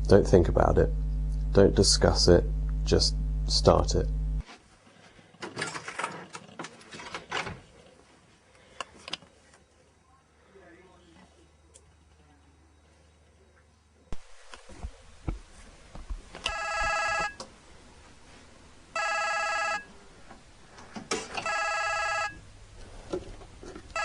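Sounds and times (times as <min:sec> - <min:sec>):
telephone ringing: 0:16.5 - 0:17.4, 0:18.9 - 0:19.9, 0:21.4 - 0:22.4.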